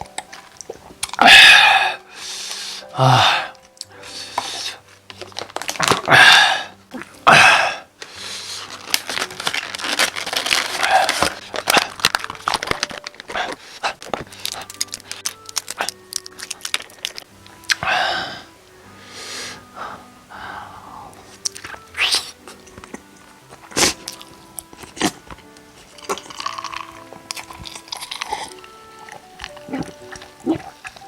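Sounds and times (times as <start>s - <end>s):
food packaging crinkling and tearing: 0.1s - 1.2s, 3.5s - 6.2s, 8.0s - 17.8s, 21.2s - 31.0s.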